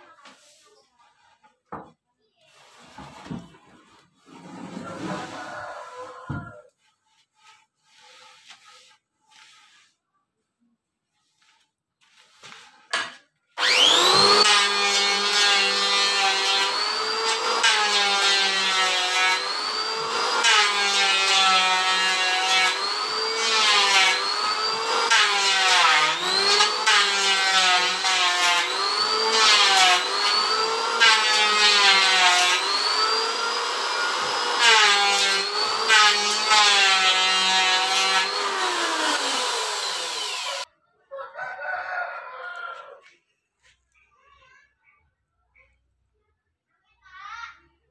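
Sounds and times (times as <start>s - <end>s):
electric planer cutting wood: 13.6s - 40.7s.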